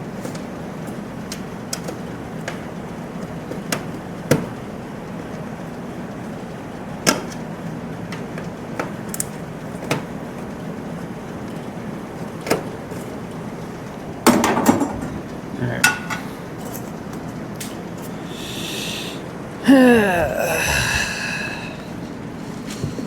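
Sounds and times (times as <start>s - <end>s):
steady background hiss: 17.6s - 22.6s.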